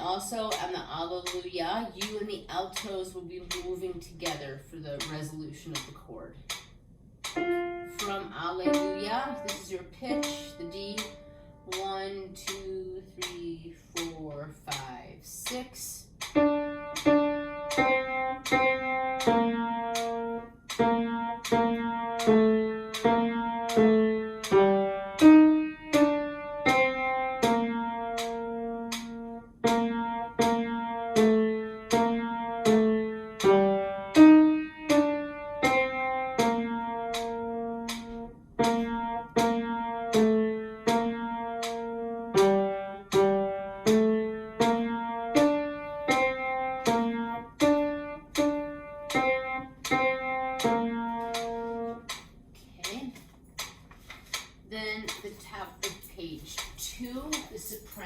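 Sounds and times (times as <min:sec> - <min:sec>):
keyboard playing hymn chords: 0:16.4 - 0:52.2.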